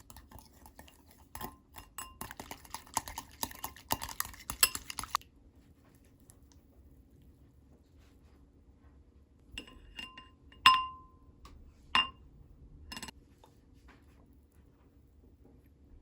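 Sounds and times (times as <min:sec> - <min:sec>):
spoon clinking against cup: 0:01.4 - 0:05.1, 0:09.6 - 0:11.1, 0:12.0 - 0:12.2.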